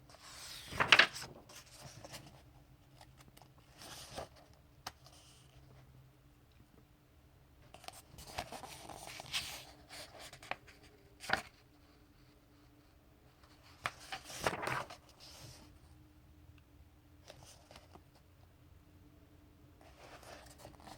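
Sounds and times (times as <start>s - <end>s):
paper pages rustling: 0.1s - 5.6s, 7.8s - 11.6s, 13.4s - 15.7s.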